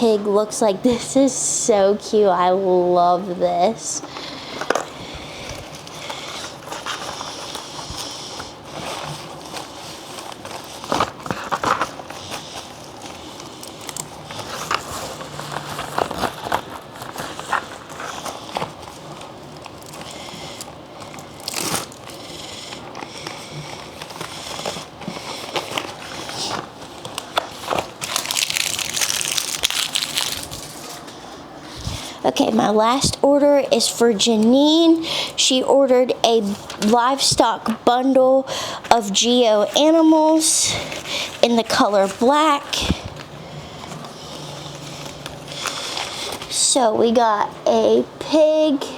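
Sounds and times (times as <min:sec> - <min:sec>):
packaging rustling and crinkling: 0:04.0 - 0:32.2, 0:38.8 - 0:46.8.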